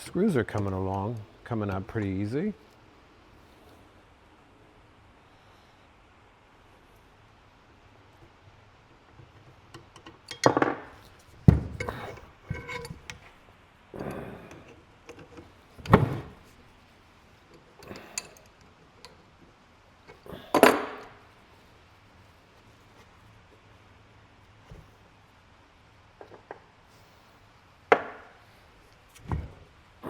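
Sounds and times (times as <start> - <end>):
metal tools clinking: 11.5 - 13.2, 17.8 - 18.5.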